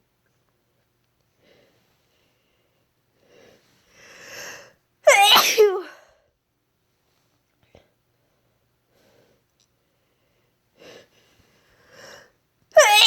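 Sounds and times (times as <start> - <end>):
woman breathing in: 1.4 - 4.8
woman sneezing: 5.1 - 6.0, 12.8 - 13.0.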